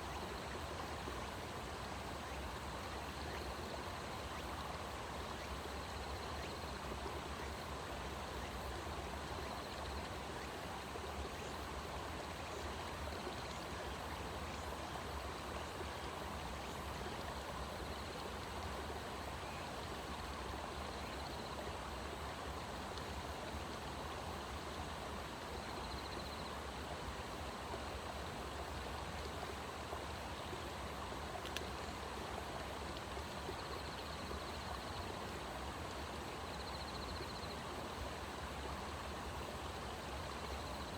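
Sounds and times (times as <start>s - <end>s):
light click: 31.4s - 31.7s.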